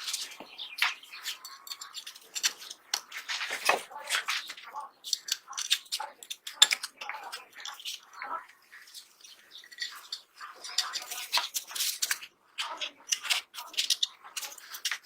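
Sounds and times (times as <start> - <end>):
metal gun parts clicking and scraping: 0.0 - 8.0, 9.0 - 12.3, 13.1 - 15.0.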